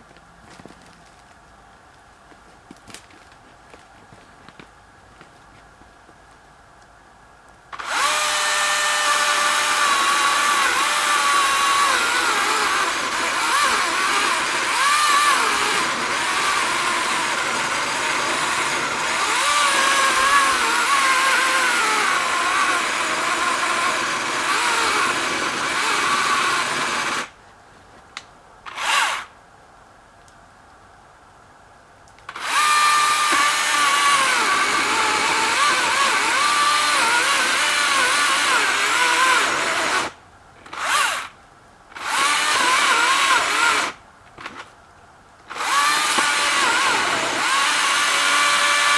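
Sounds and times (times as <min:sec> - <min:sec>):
electric chainsaw whining: 0:07.8 - 0:27.3, 0:28.7 - 0:29.3, 0:32.3 - 0:41.3, 0:42.0 - 0:44.0, 0:45.5 - 0:48.9.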